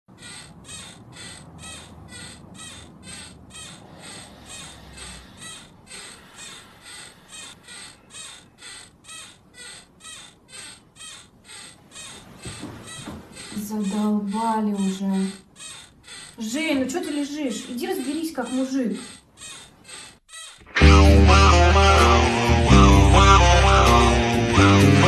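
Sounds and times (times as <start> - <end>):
rhythmic squeaky creaking: 0.1 - 25.0
low hum: 20.7 - 25.0.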